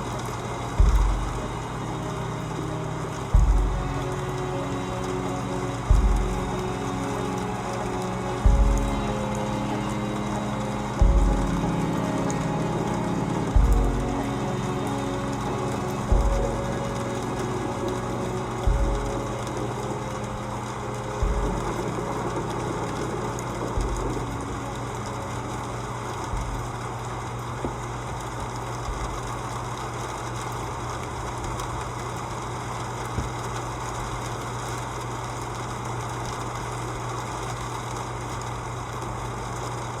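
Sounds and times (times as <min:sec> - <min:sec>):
held musical notes: 0:00.0 - 0:29.3
low hum: 0:00.0 - 0:37.0
steady rain: 0:00.0 - 0:40.0
low thumps: 0:00.8 - 0:01.7, 0:03.2 - 0:04.2, 0:05.8 - 0:06.7, 0:08.4 - 0:09.4, 0:11.0 - 0:12.2, 0:13.5 - 0:14.4, 0:16.1 - 0:17.0, 0:18.6 - 0:19.6, 0:21.2 - 0:24.7.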